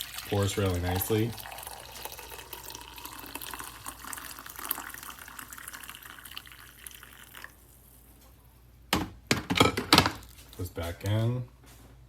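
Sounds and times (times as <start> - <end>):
coffee pouring into a cup: 0.0 - 8.2.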